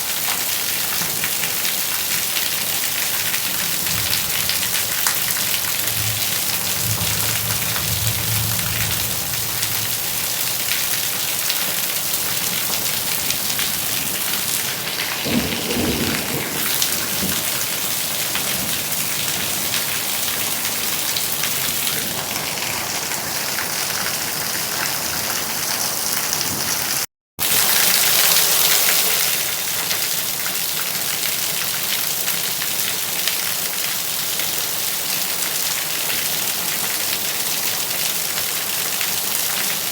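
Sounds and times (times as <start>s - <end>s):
heavy rain falling: 0.0s - 39.9s
low rumble: 5.6s - 11.2s.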